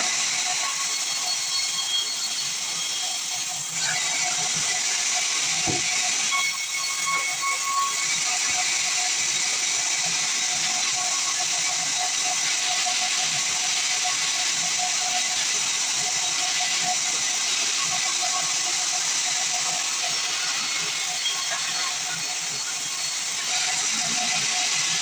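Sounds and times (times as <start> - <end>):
band saw blade cutting wood: 3.7 - 13.0.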